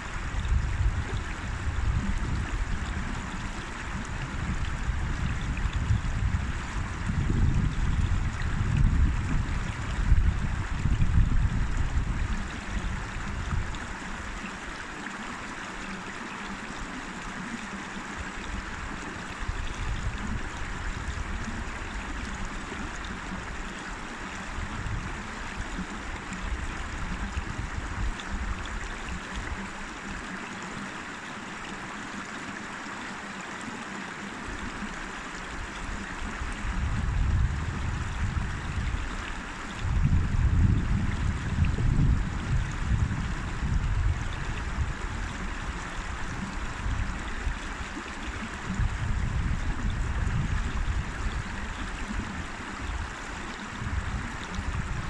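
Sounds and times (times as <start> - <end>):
river water rushing: 0.0 - 7.2, 8.1 - 40.6, 41.3 - 50.1, 50.7 - 55.0
wind buffeting microphone: 0.1 - 14.3, 24.4 - 28.8, 35.9 - 55.0.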